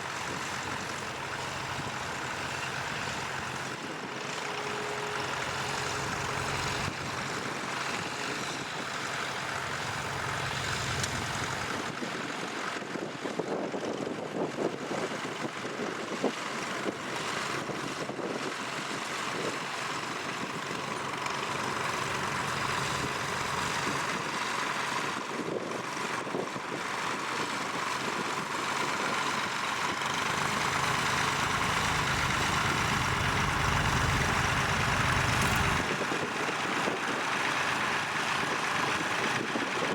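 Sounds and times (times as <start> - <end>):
tractor engine droning: 0.0 - 12.0, 19.6 - 39.9.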